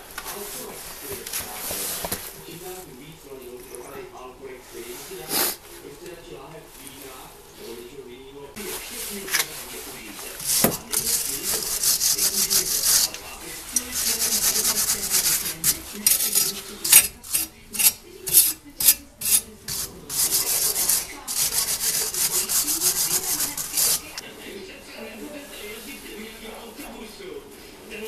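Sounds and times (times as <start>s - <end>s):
hand abrasive scrubbing metal: 9.2s - 24.2s.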